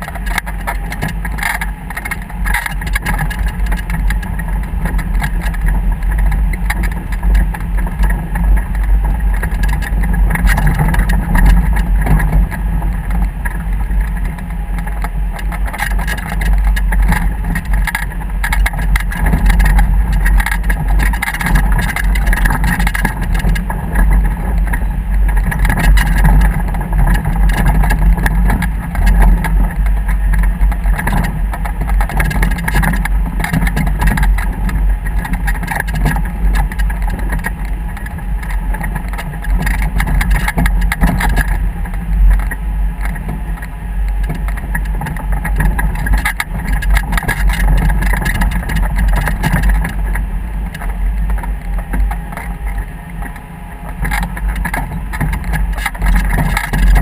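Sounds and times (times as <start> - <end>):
motor low rumble: 0.0 - 57.0.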